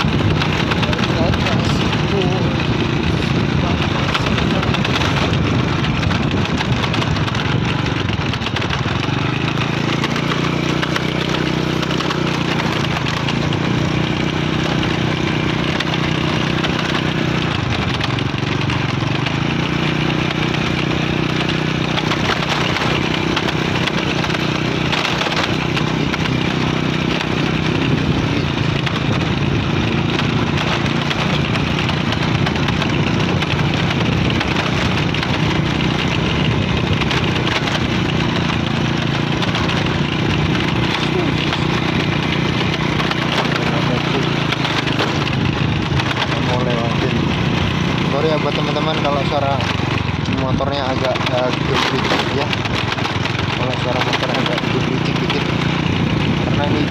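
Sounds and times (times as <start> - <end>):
wind noise on microphone: 0.0 - 9.3
motorcycle engine running: 0.0 - 56.9.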